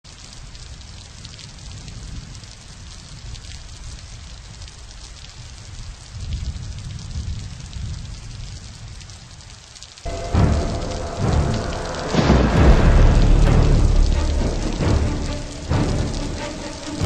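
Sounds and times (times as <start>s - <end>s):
steady rain patter: 0.0s - 17.0s
sudden loud burst: 10.1s - 17.0s.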